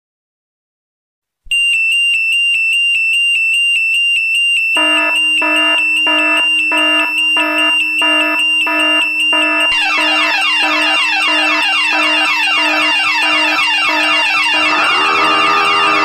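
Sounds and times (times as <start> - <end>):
high rapid alarm beeps: 4.0 - 16.0
lower pulsing alarm tone: 4.6 - 16.0.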